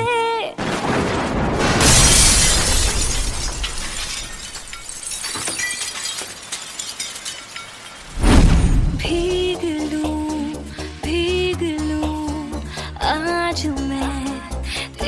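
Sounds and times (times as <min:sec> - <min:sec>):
loud crash: 0:00.6 - 0:09.7.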